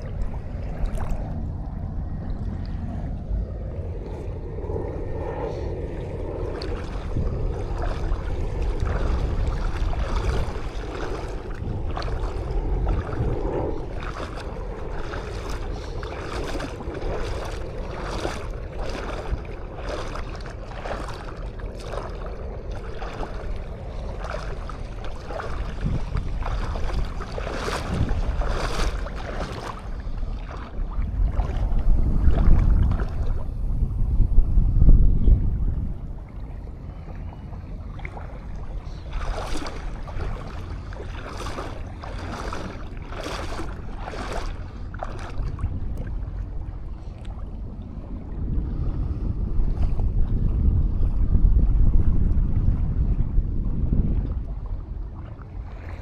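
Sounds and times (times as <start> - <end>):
small sea waves washing: 0.0 - 56.0
wind buffeting microphone: 0.0 - 56.0
footsteps walking in sand: 7.6 - 22.2, 24.2 - 29.8, 39.0 - 45.4.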